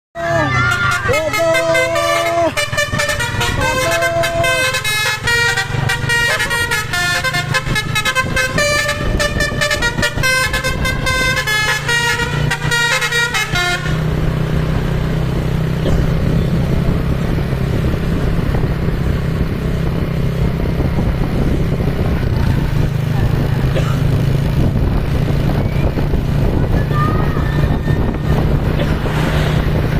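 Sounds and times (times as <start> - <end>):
bus horn playing melodic toots: 0.2 - 14.5
engine and road rumble: 0.2 - 29.9.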